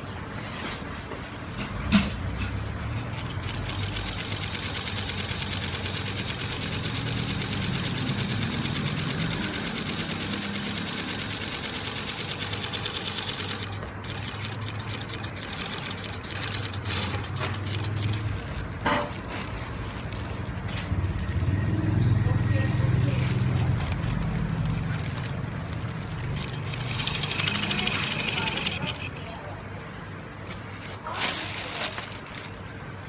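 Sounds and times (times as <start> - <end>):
sewing machine stitching: 3.1 - 21.3, 23.6 - 29.3.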